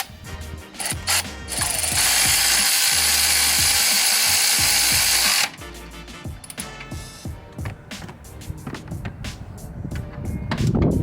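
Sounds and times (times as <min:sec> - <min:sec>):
electric ratchet driving bolt: 0:00.8 - 0:05.6.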